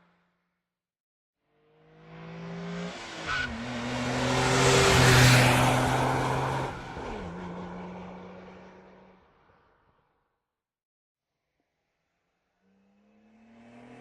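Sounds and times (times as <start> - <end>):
sports car driving past: 1.8 - 9.7.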